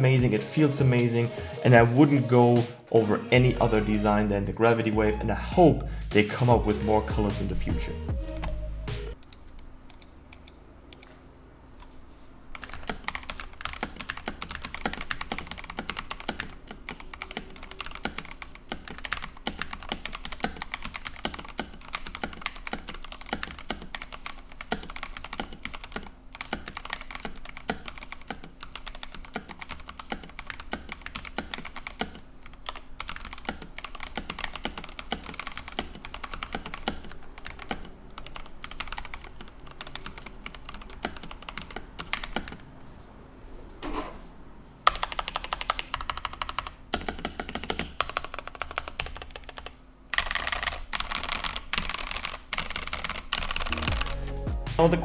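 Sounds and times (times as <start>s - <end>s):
mechanical keyboard typing: 12.6s - 42.6s, 44.8s - 54.3s.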